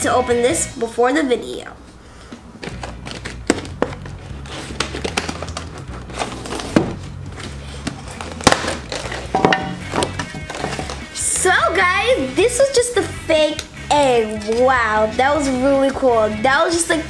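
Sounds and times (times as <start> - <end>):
quiet background music: 0.0 - 17.0
packaging crinkling: 2.6 - 11.0
plastic packaging clicks and knocks: 2.6 - 11.0.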